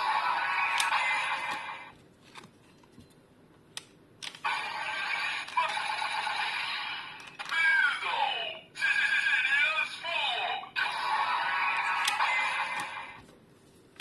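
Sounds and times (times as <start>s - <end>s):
toy electronic sound effects: 0.0s - 1.9s, 4.4s - 13.2s.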